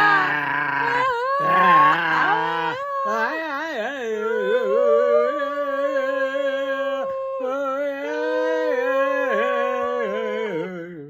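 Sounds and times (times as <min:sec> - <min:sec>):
two voices toning: 0:00.0 - 0:02.8.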